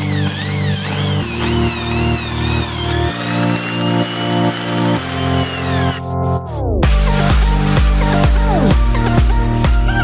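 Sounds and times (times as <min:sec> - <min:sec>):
heavy kick drum beat: 0:06.8 - 0:10.0.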